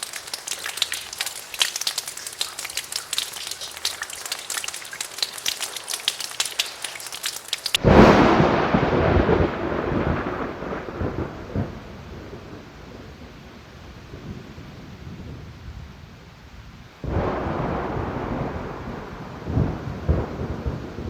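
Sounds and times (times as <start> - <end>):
raindrops ticking: 0.0 - 8.0
rain falling: 0.0 - 21.0
thunder clap rolling: 7.8 - 12.6, 17.0 - 21.0.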